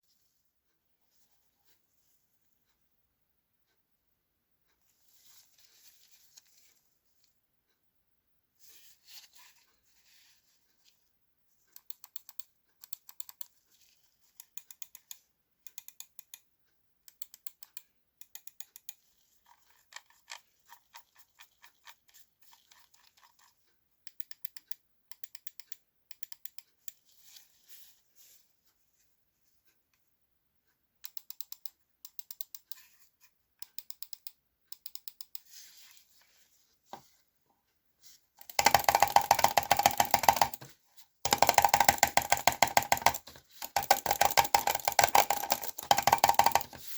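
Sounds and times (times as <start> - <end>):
mouse buttons clicking: 33.6 - 35.5.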